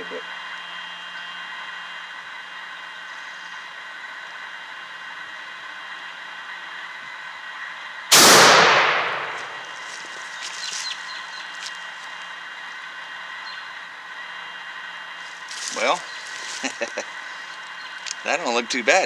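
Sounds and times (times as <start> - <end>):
shotgun blast: 8.1 - 9.8.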